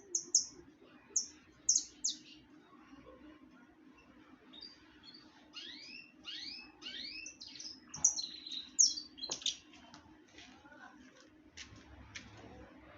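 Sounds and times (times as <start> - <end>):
sharp high bird chirps: 0.0 - 0.6, 1.2 - 2.4, 4.6 - 9.6
faint steady hum: 0.0 - 12.9.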